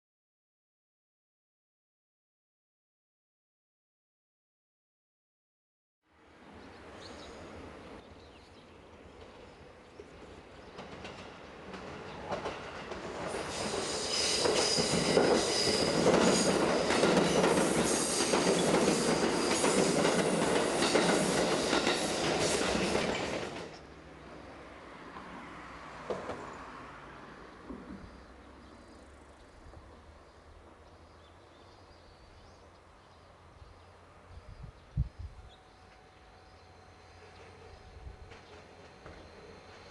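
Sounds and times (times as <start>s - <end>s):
train wheels clattering on rails: 10.2s - 23.8s, 26.0s - 26.6s, 38.2s - 39.9s.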